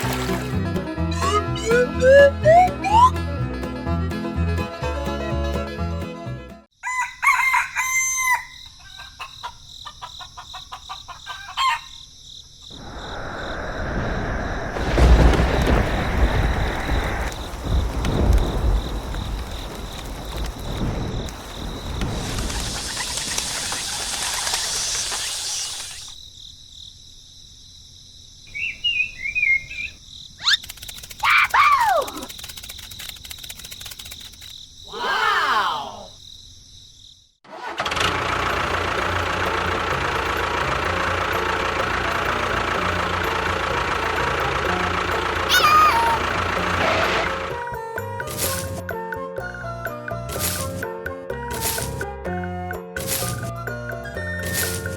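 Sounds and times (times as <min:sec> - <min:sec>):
background music: 0:00.0 - 0:06.7
rooster crowing: 0:06.8 - 0:12.0
high insect drone: 0:06.8 - 0:37.4
rushing noise: 0:12.7 - 0:25.9
steady hiss: 0:12.8 - 0:26.2
bird chirps: 0:28.5 - 0:31.1
quick sweeping bird call: 0:28.5 - 0:32.3.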